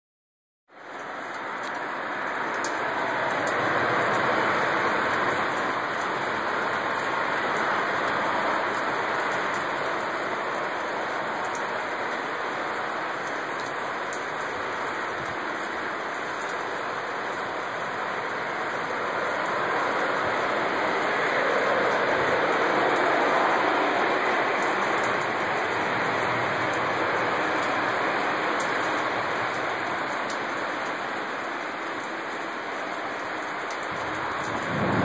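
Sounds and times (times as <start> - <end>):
loud steady rushing noise: 16.8 - 31.9, 33.9 - 35.0.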